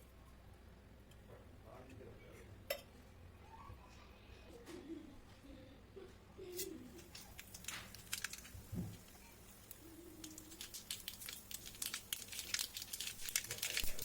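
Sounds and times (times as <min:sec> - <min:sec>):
cooking clicks and crackles: 0:06.6 - 0:14.0.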